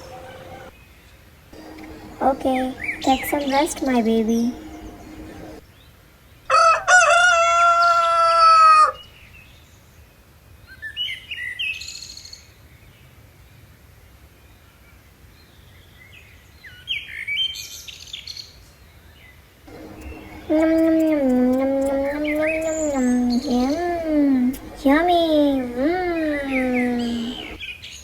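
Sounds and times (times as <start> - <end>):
birds chirping: 1.6 - 5.6, 19.7 - 27.6
drawn-out animal call: 1.6 - 5.6, 19.7 - 27.6.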